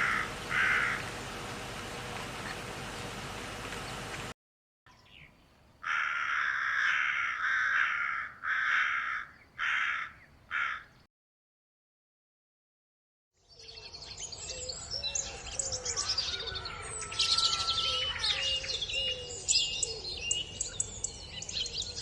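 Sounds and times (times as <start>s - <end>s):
bird harsh rasping calls: 0.0s - 4.3s, 5.8s - 11.0s
steady outdoor hiss: 0.0s - 4.3s.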